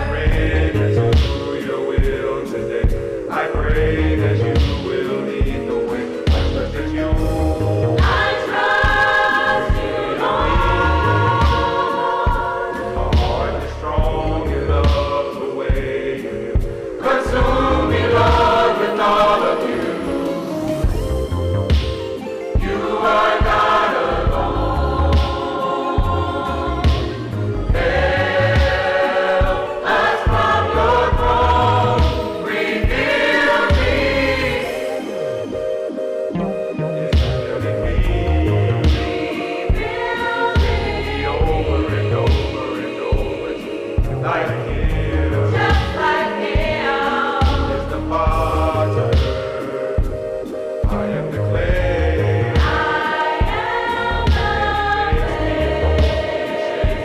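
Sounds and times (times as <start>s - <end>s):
backing track with low beat: 0.0s - 57.0s
gospel choir singing: 0.0s - 57.0s
backing track with bass and drums: 6.3s - 9.0s, 9.7s - 12.4s, 16.6s - 18.5s, 24.2s - 29.6s, 30.3s - 33.1s, 47.4s - 57.0s.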